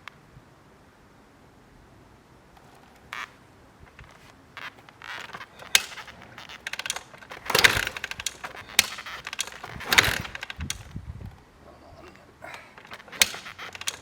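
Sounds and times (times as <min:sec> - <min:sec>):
motorcycle engine popping exhaust: 0:03.9 - 0:11.0, 0:12.6 - 0:14.0
engine throttle blips: 0:04.0 - 0:11.0.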